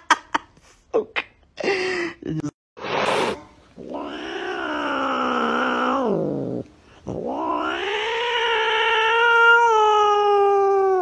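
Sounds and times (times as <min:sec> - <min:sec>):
cat yowling: 0:07.2 - 0:11.0.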